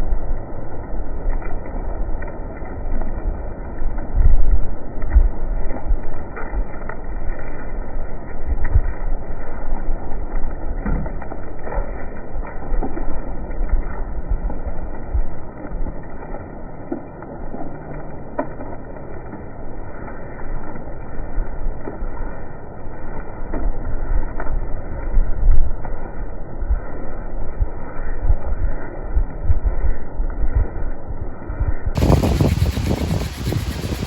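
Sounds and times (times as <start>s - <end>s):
wind buffeting microphone: 0.0s - 16.4s, 21.0s - 34.0s
hand drill scrubbing on wood: 32.0s - 34.0s.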